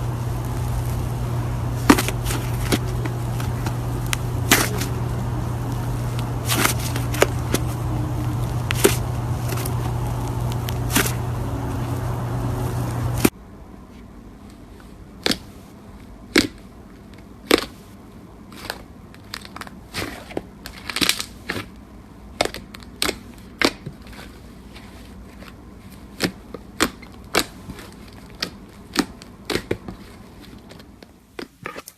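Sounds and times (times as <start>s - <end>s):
slime crackling and popping: 0.0s - 13.3s, 18.5s - 21.7s
steady low hum: 0.0s - 31.3s.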